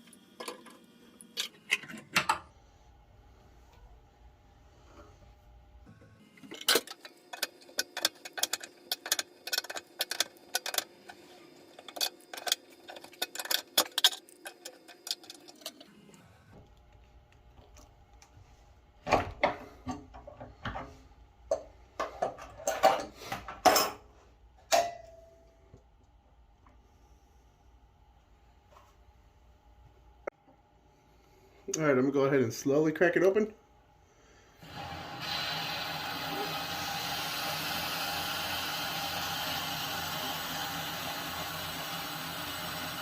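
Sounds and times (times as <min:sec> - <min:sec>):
metal tools and parts clinking: 0:11.6 - 0:15.8.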